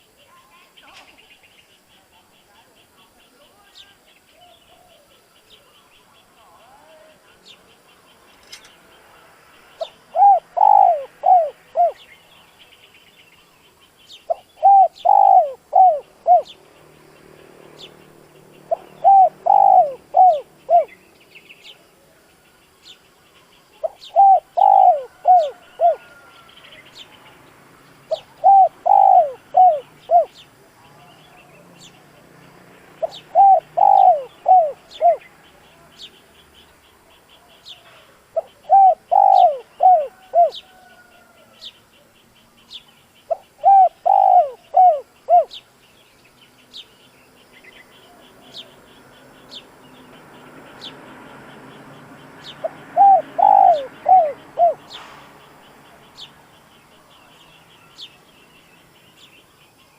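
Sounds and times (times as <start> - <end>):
small birds chirping: 0.0 - 59.9
dove cooing: 9.8 - 12.1, 14.3 - 16.6, 18.7 - 21.0, 23.8 - 26.4, 28.1 - 30.4, 33.0 - 35.3, 37.8 - 41.4, 43.3 - 45.6, 52.5 - 55.0.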